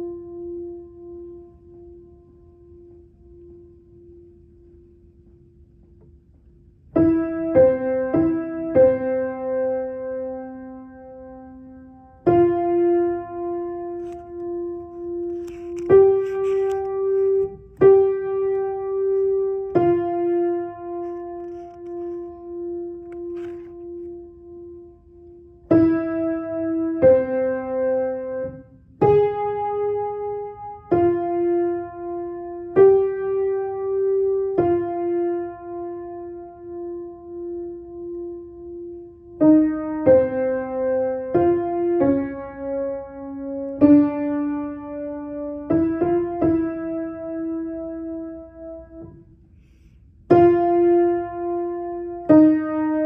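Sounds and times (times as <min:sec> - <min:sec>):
slow piano melody: 0:00.0 - 0:53.0.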